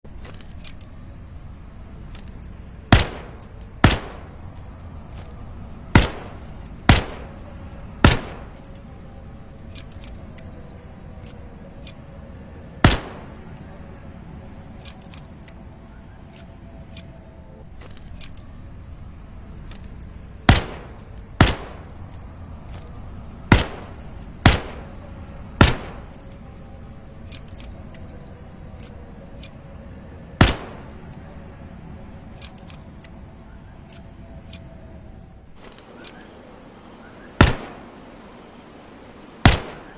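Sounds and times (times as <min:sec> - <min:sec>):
low background hum: 0:00.0 - 0:39.9.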